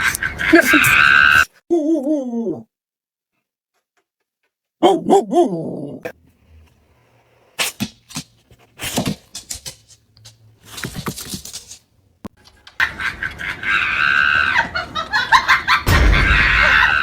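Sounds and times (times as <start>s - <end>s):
dog crying and grumbling: 0.3s - 2.7s, 4.8s - 6.2s.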